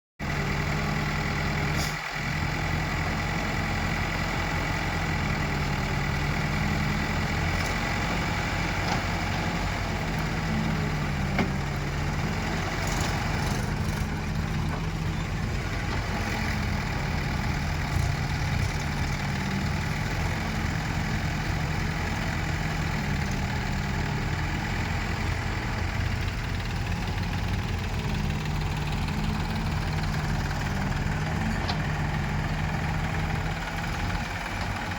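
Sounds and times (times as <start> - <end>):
diesel engine running steadily: 0.2 - 34.9.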